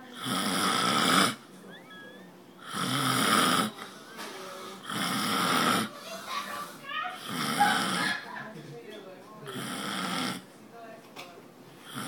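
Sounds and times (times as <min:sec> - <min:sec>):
man snoring: 0:00.1 - 0:01.4, 0:02.6 - 0:03.8, 0:04.8 - 0:05.9, 0:07.2 - 0:08.1, 0:09.5 - 0:10.4.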